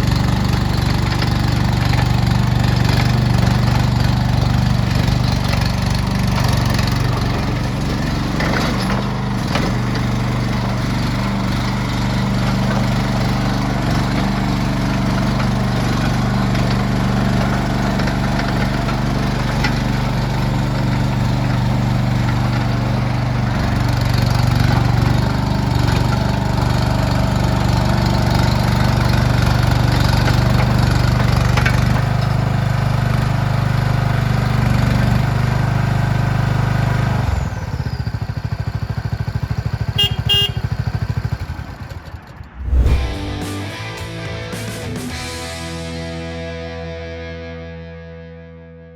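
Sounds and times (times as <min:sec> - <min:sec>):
small engine running: 0:00.0 - 0:45.9.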